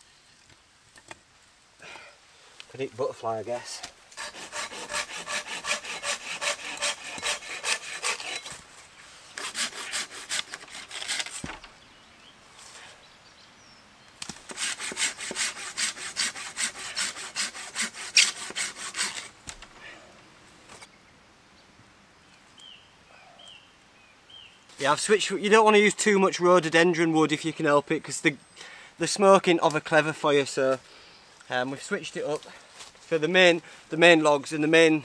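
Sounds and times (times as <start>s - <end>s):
hand saw cutting wood: 4.1s - 8.6s, 9.4s - 11.5s, 14.5s - 19.3s.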